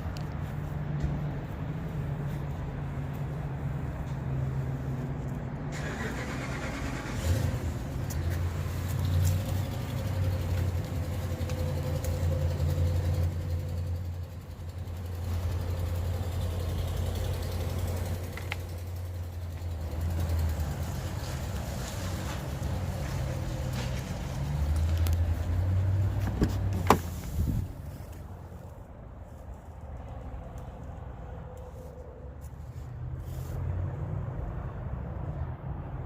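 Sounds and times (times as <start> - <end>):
vehicle engine running: 0.0 - 30.9.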